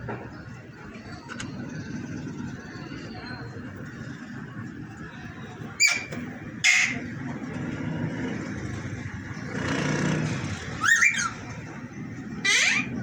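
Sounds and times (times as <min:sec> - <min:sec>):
low rumble of traffic: 0:00.0 - 0:13.0
parrot squawking: 0:05.8 - 0:07.1, 0:10.8 - 0:11.4, 0:12.4 - 0:13.0.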